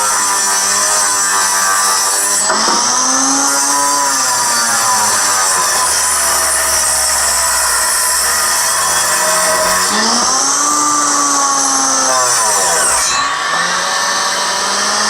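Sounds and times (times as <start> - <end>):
electric motor whining: 0.0 - 15.0.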